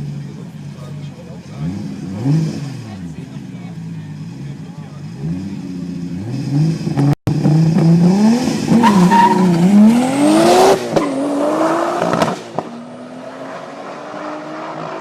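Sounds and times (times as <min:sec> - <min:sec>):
car engine accelerating hard: 0:00.0 - 0:15.0.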